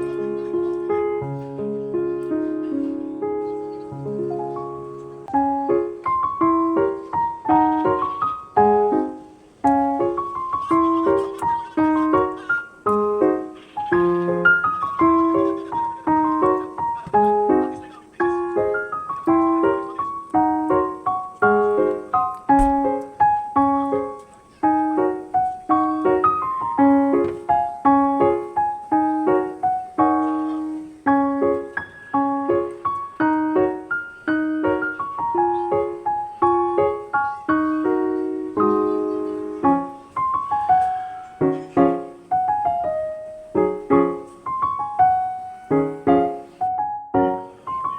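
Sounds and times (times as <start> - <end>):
piano music: 0.0 - 47.9.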